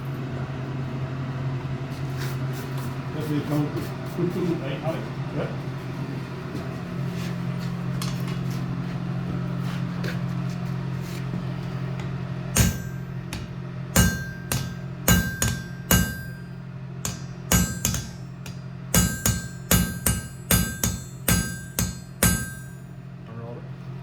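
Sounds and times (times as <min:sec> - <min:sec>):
steady low hum: 0:00.0 - 0:24.0
hammer striking hot steel: 0:12.5 - 0:22.9.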